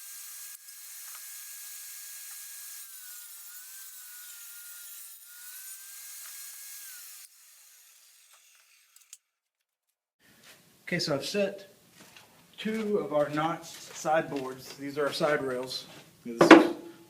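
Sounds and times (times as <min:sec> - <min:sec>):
power saw cutting wood: 0:00.0 - 0:09.2.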